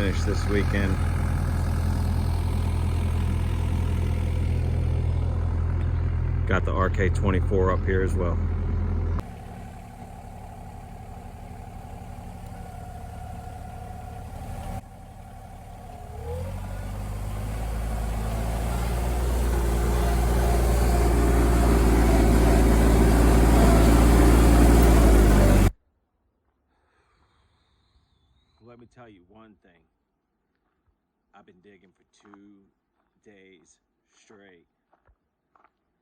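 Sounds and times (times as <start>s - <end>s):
excavator diesel engine running: 0.0s - 25.7s.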